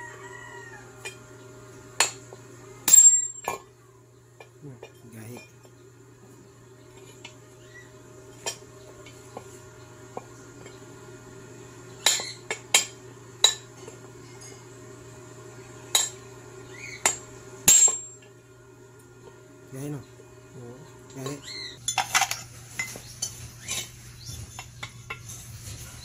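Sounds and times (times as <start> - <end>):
metal tools clinking: 21.2 - 25.5.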